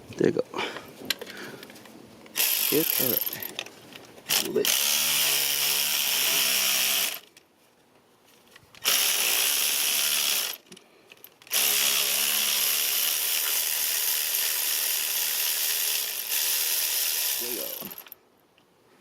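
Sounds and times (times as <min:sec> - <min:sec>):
ratchet spinning: 0:02.4 - 0:03.5, 0:11.5 - 0:18.2.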